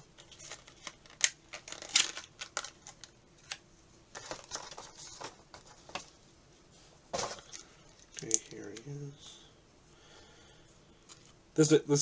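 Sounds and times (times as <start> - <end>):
plastic packaging clicks and crinkles: 0.0 - 6.2, 7.2 - 9.0.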